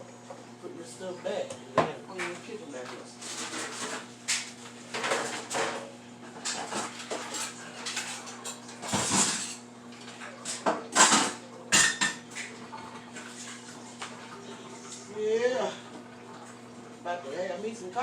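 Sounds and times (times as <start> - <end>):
dishes and cutlery clattering: 6.4 - 12.5.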